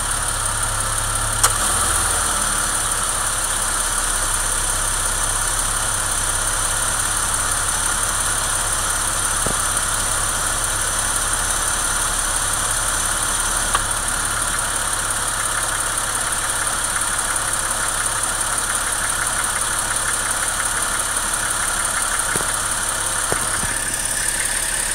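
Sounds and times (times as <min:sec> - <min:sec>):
car engine idling: 0:00.0 - 0:24.9.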